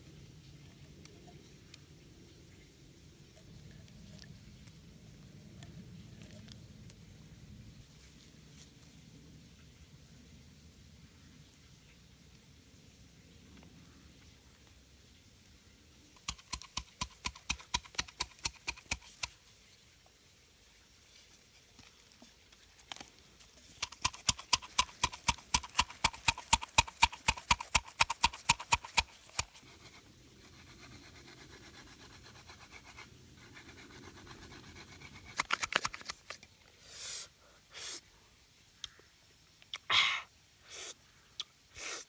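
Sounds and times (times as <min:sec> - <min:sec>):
rustling: 0:07.8 - 0:09.0, 0:16.2 - 0:19.9, 0:20.6 - 0:36.6
rapid sharp taps: 0:16.2 - 0:19.4, 0:23.8 - 0:29.8.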